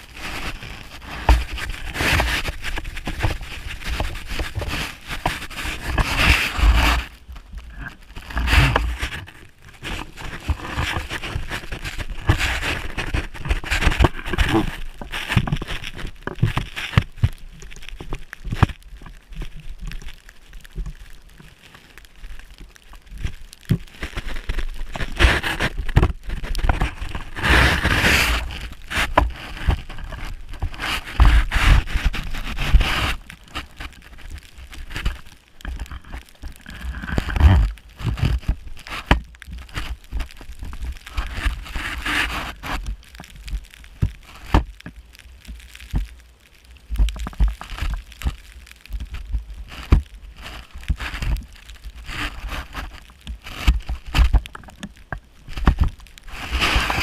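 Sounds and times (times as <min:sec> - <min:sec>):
snowboard scraping over snow: 0:00.0 - 0:15.8, 0:23.8 - 0:35.2, 0:56.3 - 0:57.0.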